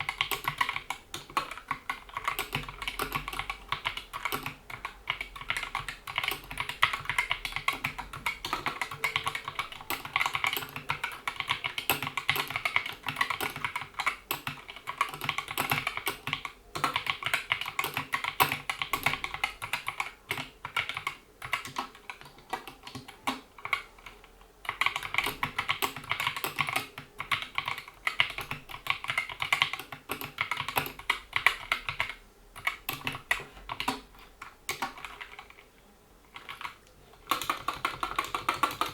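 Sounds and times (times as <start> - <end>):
fast typing on mechanical keyboard: 0.0 - 35.7, 36.3 - 38.9.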